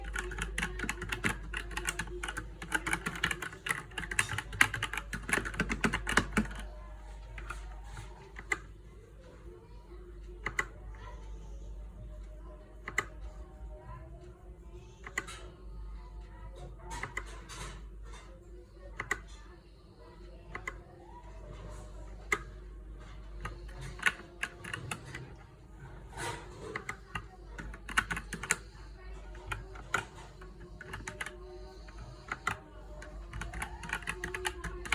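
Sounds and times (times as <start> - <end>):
mechanical keyboard typing: 0.0 - 8.7, 10.4 - 10.8, 12.8 - 13.3, 16.6 - 18.2, 18.8 - 19.4, 20.0 - 34.9.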